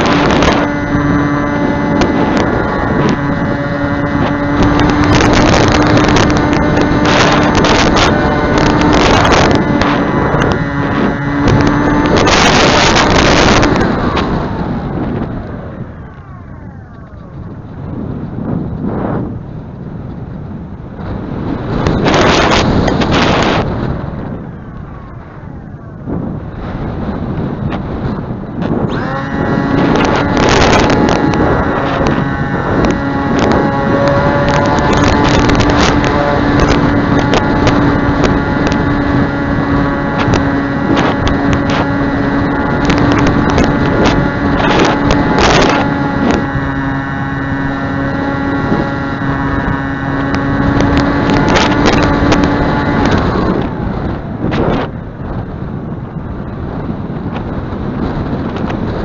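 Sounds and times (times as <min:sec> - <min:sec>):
model airplane motor whine: 0:00.0 - 0:18.9, 0:28.5 - 0:55.0
wind buffeting microphone: 0:00.0 - 0:59.0.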